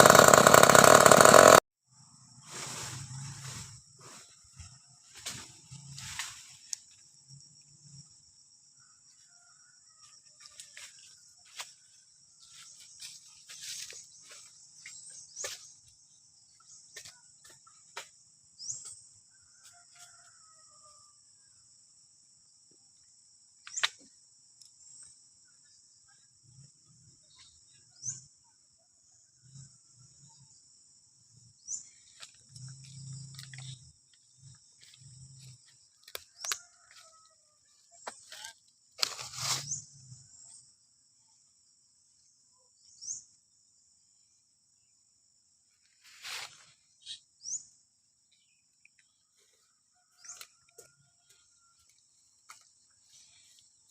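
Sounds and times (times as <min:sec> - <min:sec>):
sharp clicks: 0:00.0 - 0:01.6
insects chirring: 0:00.0 - 0:15.7.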